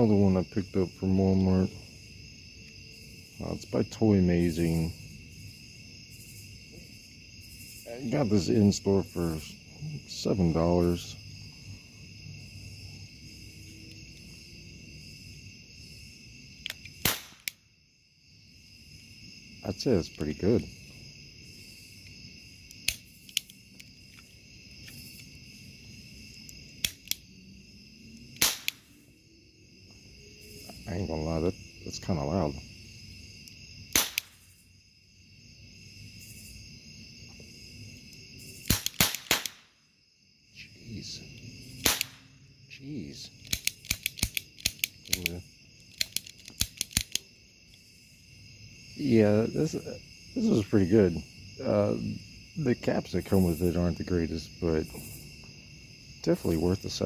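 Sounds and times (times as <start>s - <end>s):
crickets chirring: 0.0s - 57.0s
cap gun clicks: 16.6s - 17.6s, 22.8s - 23.6s, 26.8s - 27.2s, 28.4s - 28.9s, 33.9s - 34.4s, 38.7s - 39.7s, 41.8s - 42.3s, 43.4s - 45.3s, 45.9s - 47.2s
cap gun cracks: 16.6s - 17.6s, 22.8s - 23.6s, 26.8s - 27.2s, 28.4s - 28.9s, 33.9s - 34.5s, 38.6s - 39.8s, 41.8s - 42.4s, 43.4s - 47.2s.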